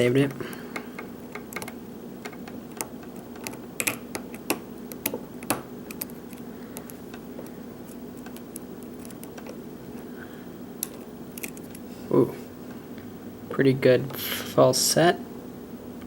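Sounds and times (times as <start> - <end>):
lock pick clicking: 1.3 - 7.0.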